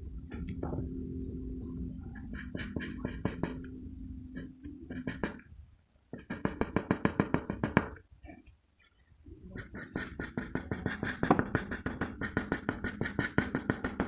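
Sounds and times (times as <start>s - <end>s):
pencil scratching on paper: 2.3s - 3.7s, 4.4s - 5.5s, 6.1s - 7.9s, 9.4s - 14.0s.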